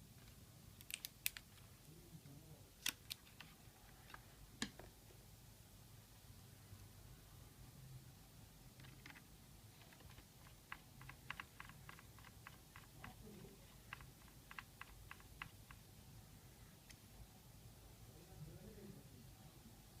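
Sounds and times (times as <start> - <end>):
laptop keyboard typing: 8.8 - 15.9.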